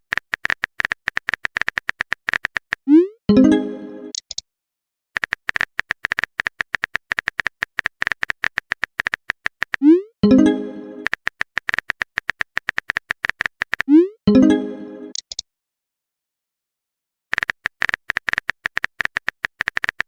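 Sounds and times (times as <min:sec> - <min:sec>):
phone keyboard tapping: 0:00.0 - 0:02.8, 0:05.2 - 0:09.8, 0:11.0 - 0:13.9, 0:17.3 - 0:20.0.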